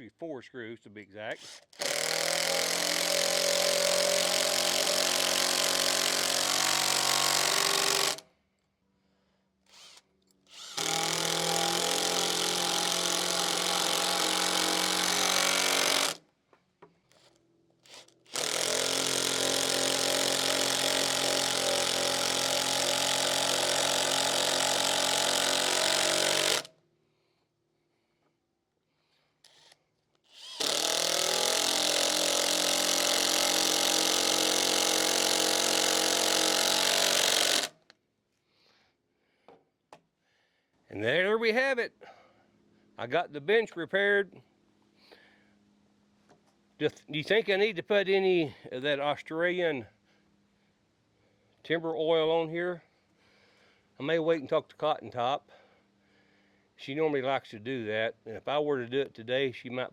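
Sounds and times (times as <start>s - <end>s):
power drill driving screws into wood: 1.4s - 8.2s, 9.6s - 16.2s, 17.1s - 26.8s, 29.4s - 37.9s.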